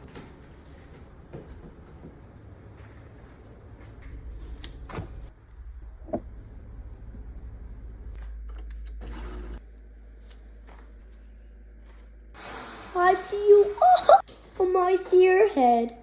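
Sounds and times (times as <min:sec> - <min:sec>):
low steady hum: 0:00.0 - 0:12.4.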